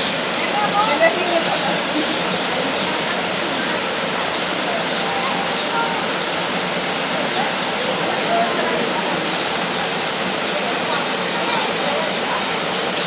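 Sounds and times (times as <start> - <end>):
flowing water: 0.0 - 13.0
small birds chirping: 12.6 - 13.0.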